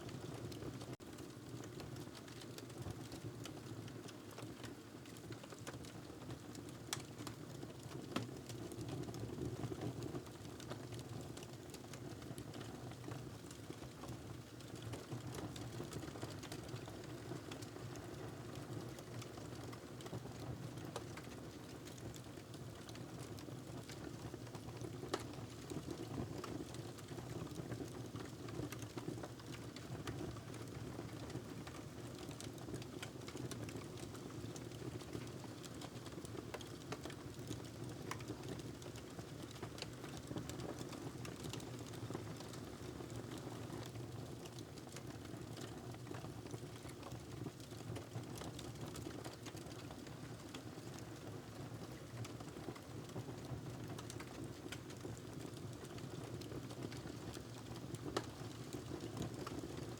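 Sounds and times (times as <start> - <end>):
wood fire crackling: 16.4 - 18.2.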